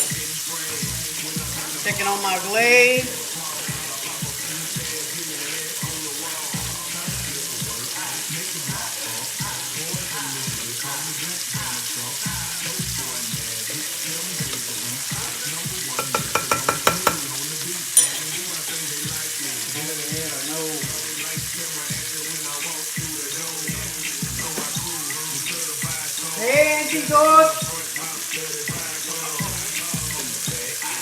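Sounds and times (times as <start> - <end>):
chicken sizzling in a pan: 0.0 - 31.0
quick taps: 16.0 - 17.2.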